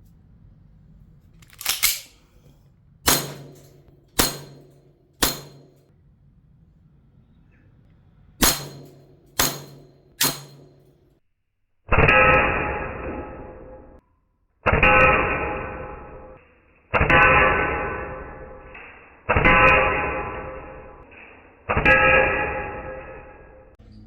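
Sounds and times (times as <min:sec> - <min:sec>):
airsoft pistol shots: 0:03.1 - 0:05.8, 0:08.4 - 0:10.8.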